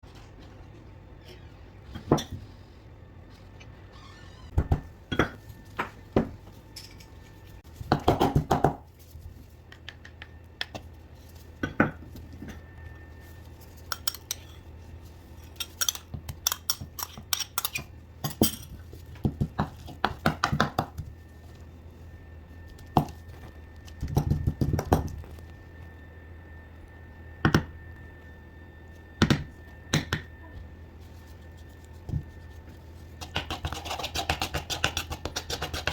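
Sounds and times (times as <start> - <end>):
steady low hum: 0.0 - 35.9
utensils and dishes clattering: 15.5 - 18.8.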